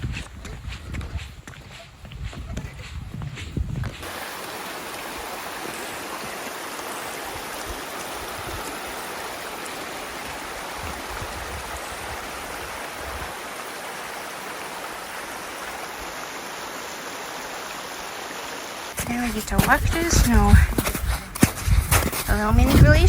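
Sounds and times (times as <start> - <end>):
mountain stream rushing: 4.0 - 23.0.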